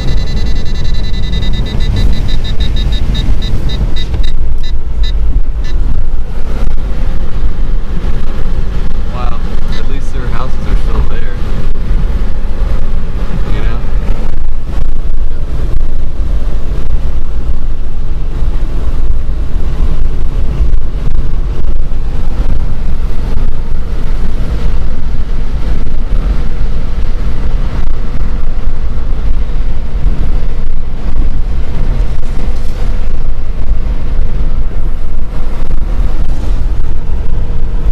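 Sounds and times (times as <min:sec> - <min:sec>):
wind buffeting microphone: 0:00.0 - 0:37.9.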